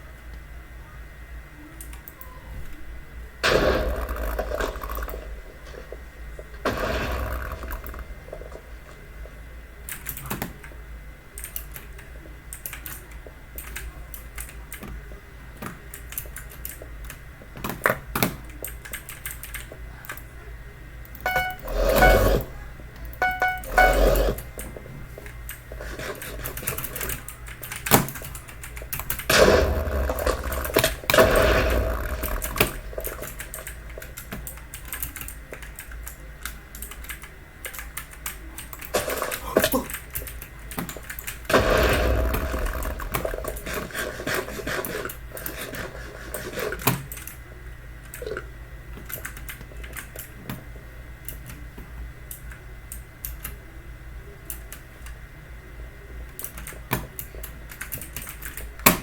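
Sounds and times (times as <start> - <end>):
mechanical keyboard typing: 11.4 - 14.9, 21.3 - 22.4, 23.2 - 24.4, 32.1 - 38.9.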